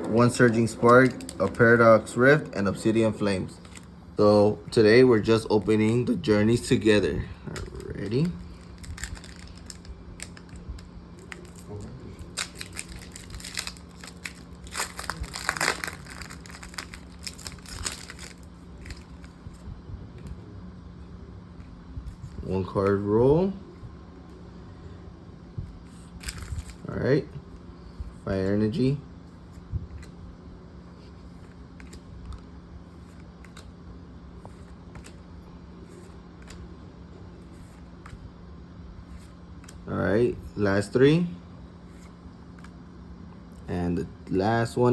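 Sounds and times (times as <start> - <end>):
cards clicking and rustling: 0.0 - 1.9, 2.8 - 3.9, 5.2 - 19.6, 31.4 - 32.4, 33.0 - 33.7, 34.4 - 35.2, 36.0 - 36.7, 39.1 - 39.9
low steady hum: 0.0 - 44.9
foil wrapper crinkling and tearing: 7.5 - 19.3.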